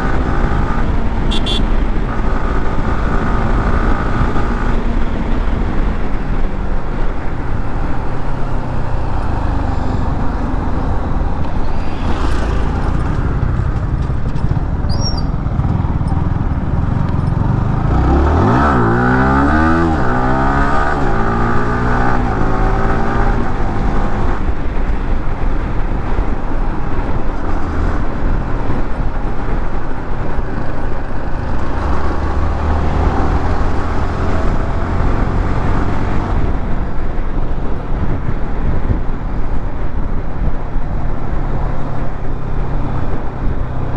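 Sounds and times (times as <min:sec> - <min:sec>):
motorcycle engine accelerating: 0:00.0 - 0:25.2, 0:27.0 - 0:36.7
wind and road noise: 0:00.0 - 0:43.9.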